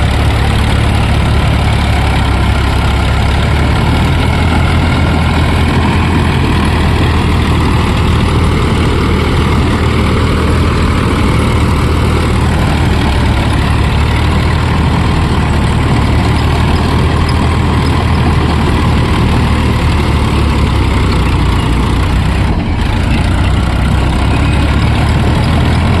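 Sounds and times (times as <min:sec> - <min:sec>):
tractor engine running: 0:00.0 - 0:26.0.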